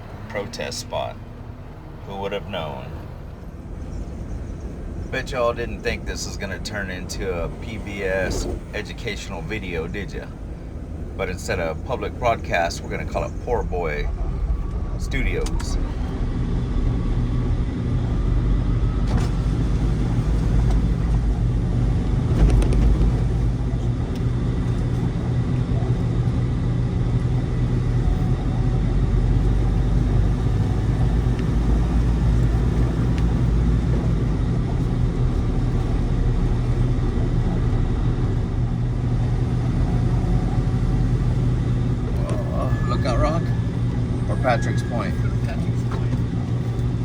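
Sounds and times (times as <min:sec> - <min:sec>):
vehicle driving low rumble: 0:00.0 - 0:47.0.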